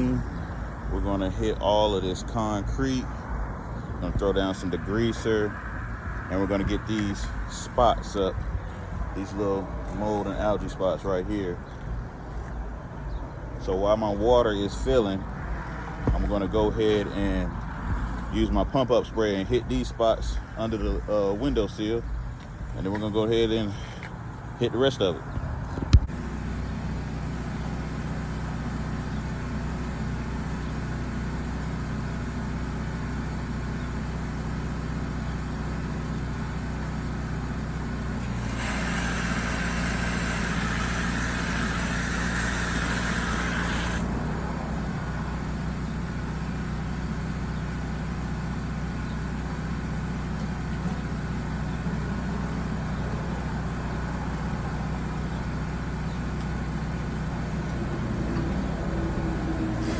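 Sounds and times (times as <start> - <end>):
engine running: 25.7 - 59.9
hissing spray: 38.0 - 44.1.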